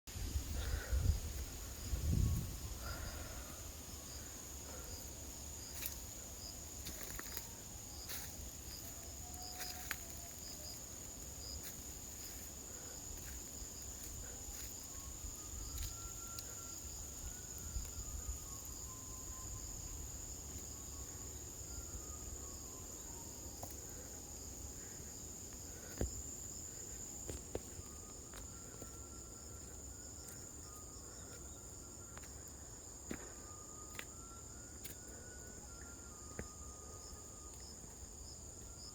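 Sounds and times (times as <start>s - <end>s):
wind rumble on microphone: 0.1s - 3.4s
insects trilling: 0.1s - 38.9s.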